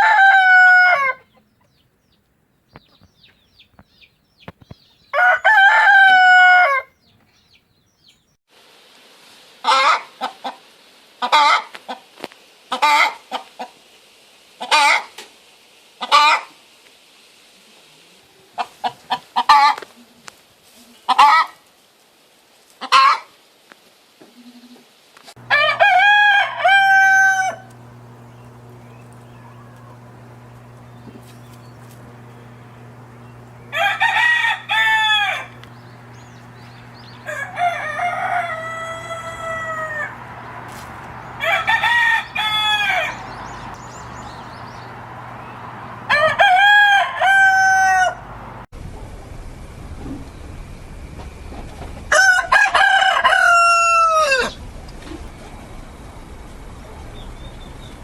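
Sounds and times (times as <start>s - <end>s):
rooster crowing: 0.0s - 1.4s, 5.1s - 7.0s, 25.4s - 31.0s, 32.4s - 48.6s, 52.1s - 54.6s
steady low hum: 25.4s - 46.5s, 48.1s - 52.1s.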